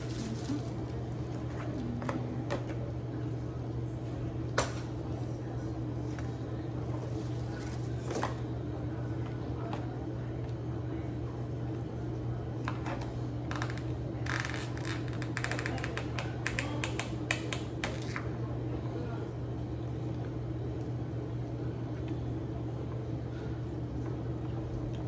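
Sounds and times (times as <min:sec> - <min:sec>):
packaging crackling clicks: 0:00.0 - 0:01.4, 0:13.5 - 0:18.2.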